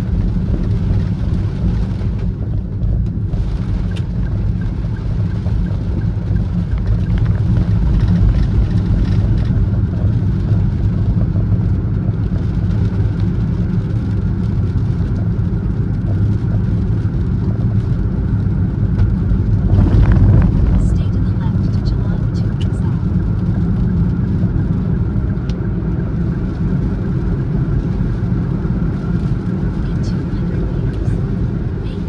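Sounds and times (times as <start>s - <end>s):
car engine and road rumble: 0.0s - 32.0s.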